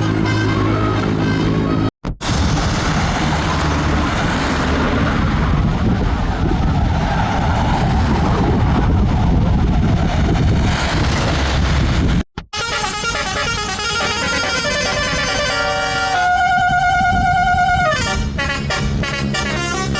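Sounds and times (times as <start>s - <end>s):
wind buffeting microphone: 0.0s - 12.3s, 13.2s - 19.3s
bus engine and road rumble: 0.0s - 19.9s.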